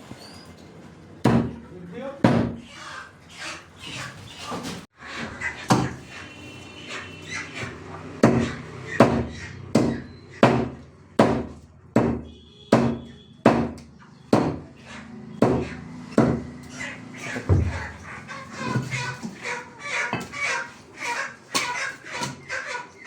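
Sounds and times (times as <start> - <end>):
cleaver chopping on block: 8.2 - 14.6.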